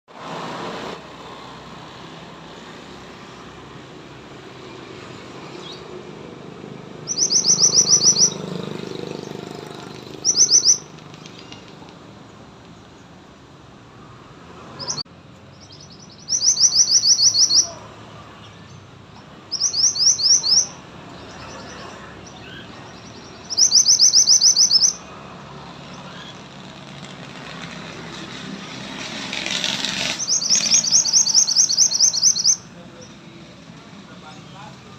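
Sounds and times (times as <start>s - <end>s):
songbird singing high trills: 7.0s - 9.6s, 10.2s - 10.9s, 14.8s - 18.8s, 19.4s - 25.2s, 30.0s - 33.2s.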